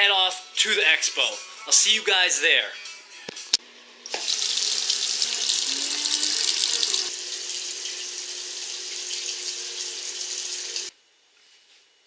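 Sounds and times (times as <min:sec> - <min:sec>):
tap water running into sink: 0:04.1 - 0:10.9.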